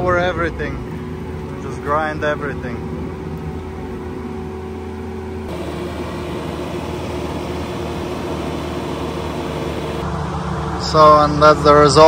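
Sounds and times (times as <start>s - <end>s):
diesel engine running under load: 0.0s - 12.0s
rotor grinding head grinding ground: 5.5s - 10.2s.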